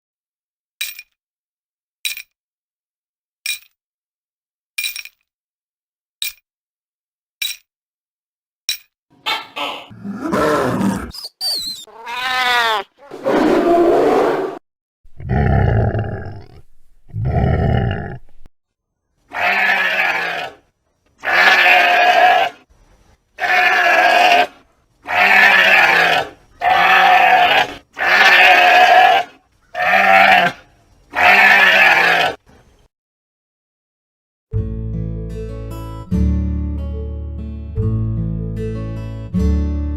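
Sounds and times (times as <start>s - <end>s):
sheep bleating: 11.9s - 12.9s, 19.3s - 20.6s, 21.2s - 22.6s, 23.4s - 32.4s.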